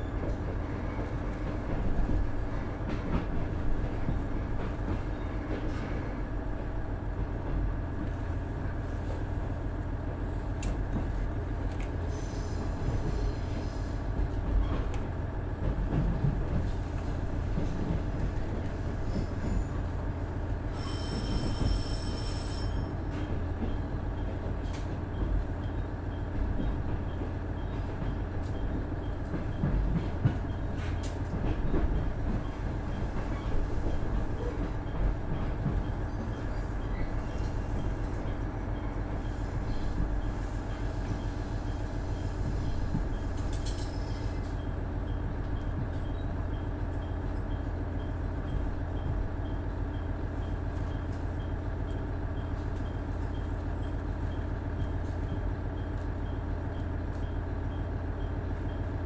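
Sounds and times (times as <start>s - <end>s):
train engine and wheels rumbling: 0.0s - 59.0s
high ringing tone: 20.7s - 23.0s.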